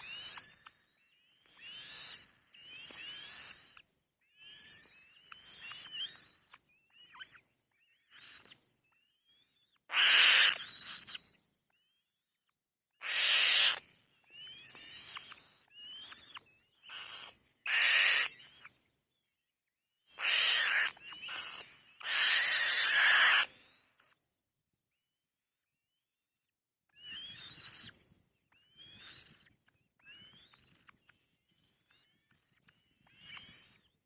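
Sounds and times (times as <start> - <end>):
young birds of prey screeching: 0.0 - 3.8, 4.4 - 8.6, 9.4 - 11.3, 13.0 - 18.7, 20.1 - 24.1, 31.7 - 33.9.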